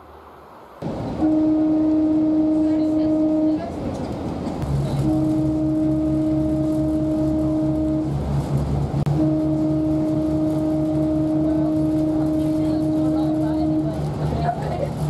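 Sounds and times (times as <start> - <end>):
low pulsing rumble: 0.8 - 3.9, 4.5 - 15.0
train air horn blasts: 1.2 - 3.8, 4.7 - 8.3, 9.1 - 14.0.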